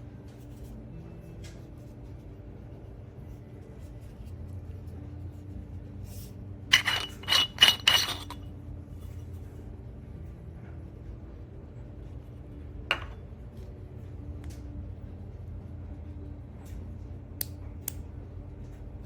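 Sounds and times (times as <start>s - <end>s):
faint low hum: 0.0s - 19.0s
hard objects clinking together: 6.7s - 8.4s.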